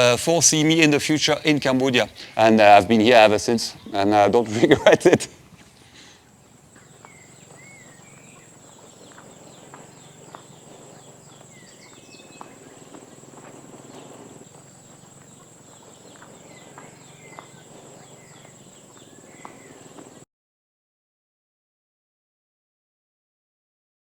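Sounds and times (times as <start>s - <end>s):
birds chirping: 0.0s - 20.2s
high-pitched insect drone: 6.5s - 20.2s
faint ticks: 6.8s - 20.2s.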